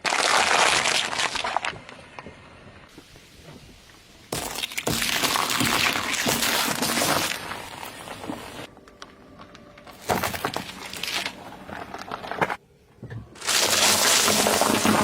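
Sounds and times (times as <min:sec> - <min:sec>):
tyre crushing crunching objects: 0:00.0 - 0:01.9, 0:04.3 - 0:12.6, 0:13.4 - 0:15.0.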